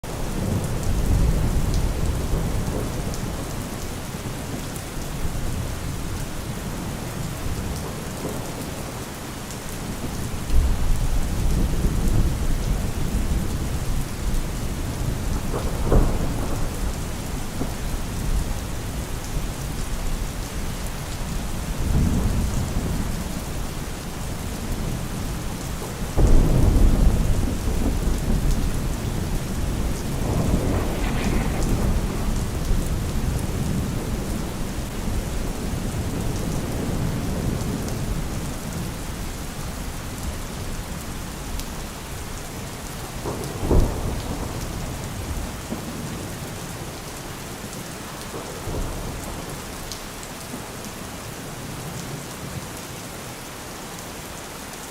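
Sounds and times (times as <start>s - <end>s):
steady rain: 0.0s - 54.9s
distant thunder rolling: 25.9s - 38.2s
sharp thunder clap: 26.2s - 35.3s.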